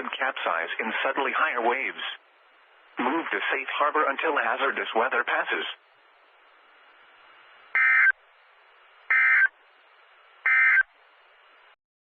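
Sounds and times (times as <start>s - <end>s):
faint radio hiss: 0.0s - 11.8s
digital data tone bursts: 7.8s - 8.2s, 9.1s - 9.5s, 10.4s - 10.9s.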